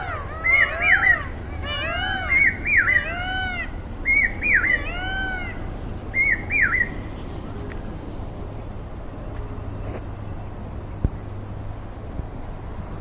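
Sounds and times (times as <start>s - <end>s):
peacocks calling: 0.0s - 8.4s.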